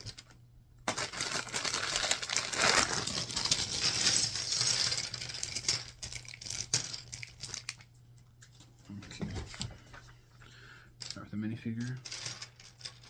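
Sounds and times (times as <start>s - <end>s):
plastic bag crinkling: 0.0s - 7.8s, 11.8s - 13.0s
plastic bricks clattering: 0.0s - 7.8s, 11.8s - 13.0s.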